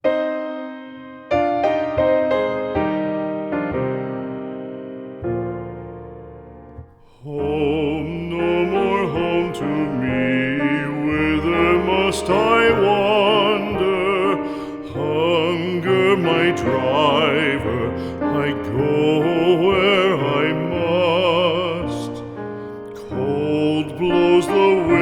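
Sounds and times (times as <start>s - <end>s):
piano accompaniment: 0.0s - 25.0s
piano chord: 0.0s - 25.0s
person singing with vibrato: 7.0s - 25.0s.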